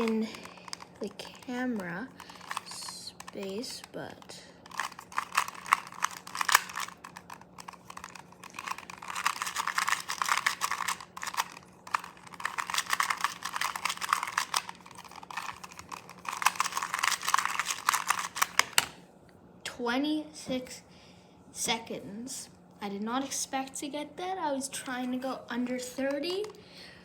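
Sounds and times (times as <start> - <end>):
plastic puzzle cube clicking: 0.0 - 3.3, 4.7 - 18.9.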